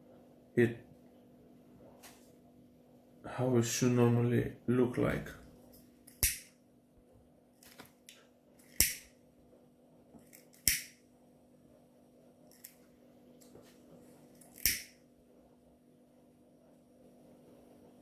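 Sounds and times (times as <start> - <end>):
steady low hum: 0.0 - 18.0
lighter clicking and hissing: 8.7 - 9.1, 10.2 - 11.0, 14.4 - 15.0.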